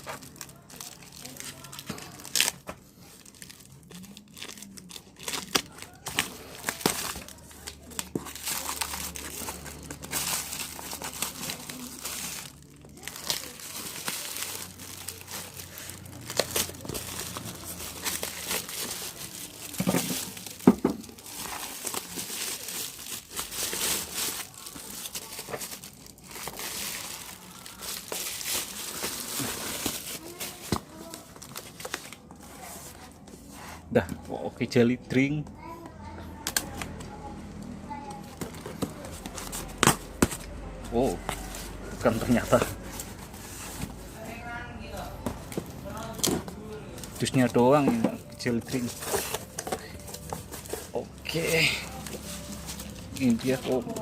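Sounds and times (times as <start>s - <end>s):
packaging crinkling and tearing: 0.0s - 33.0s, 45.3s - 54.0s.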